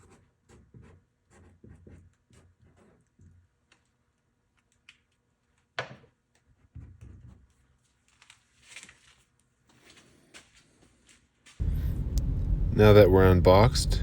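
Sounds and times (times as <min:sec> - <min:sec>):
pen scratching: 0:00.0 - 0:03.4.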